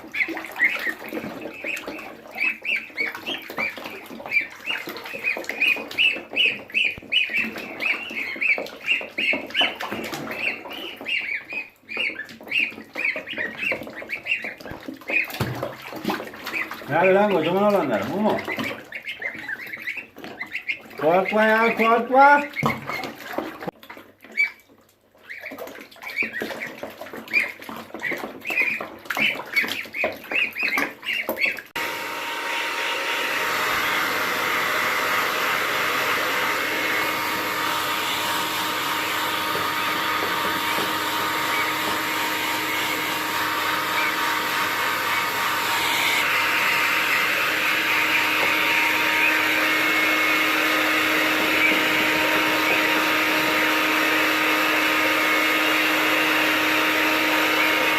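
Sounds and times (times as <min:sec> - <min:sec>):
gosling peeping: 0:00.0 - 0:31.8, 0:33.2 - 0:57.9
hair dryer running: 0:31.8 - 0:57.9.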